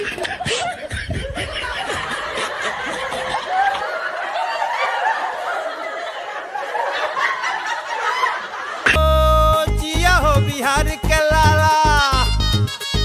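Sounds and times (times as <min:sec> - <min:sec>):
people laughing: 0:00.0 - 0:09.7.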